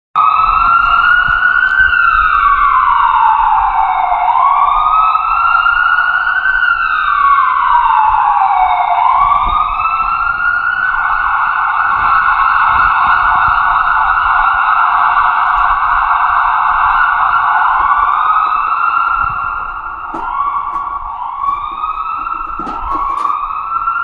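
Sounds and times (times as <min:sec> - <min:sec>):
emergency siren wailing: 0:00.2 - 0:24.0.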